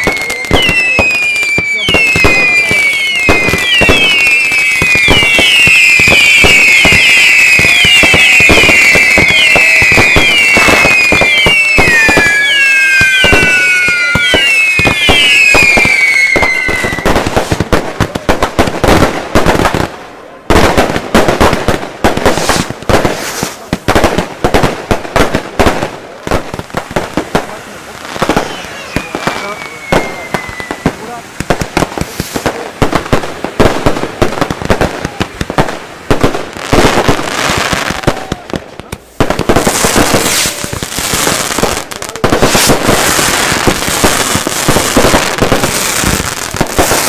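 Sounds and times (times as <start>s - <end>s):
firework bangs and crackling: 0.0s - 47.0s
firework cracks: 0.0s - 47.0s
whistling fireworks: 0.0s - 47.0s.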